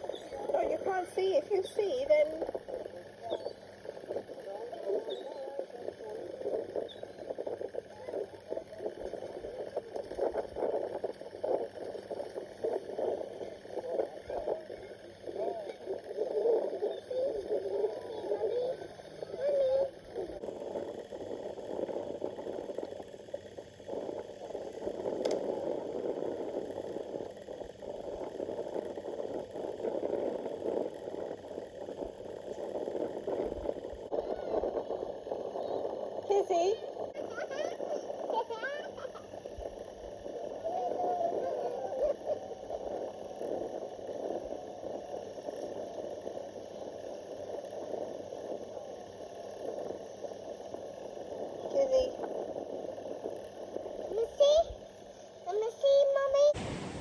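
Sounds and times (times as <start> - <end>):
surf washing on a beach: 56.6 - 57.0.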